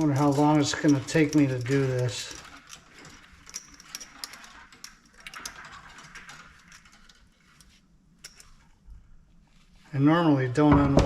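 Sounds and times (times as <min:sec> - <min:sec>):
metal scrap clicking and scraping: 0:00.0 - 0:08.7.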